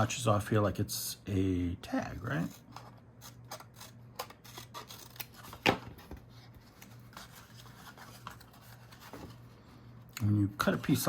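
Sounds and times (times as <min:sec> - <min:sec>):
scissors snipping paper: 0:03.2 - 0:05.8.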